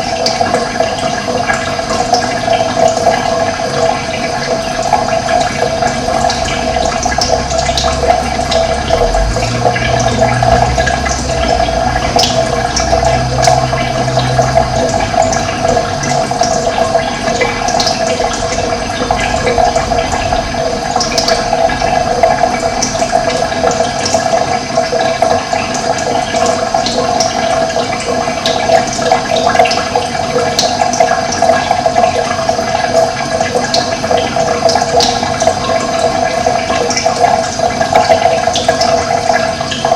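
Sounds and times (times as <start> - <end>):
running water rushing: 0.0 - 39.9
low hum: 5.4 - 25.4.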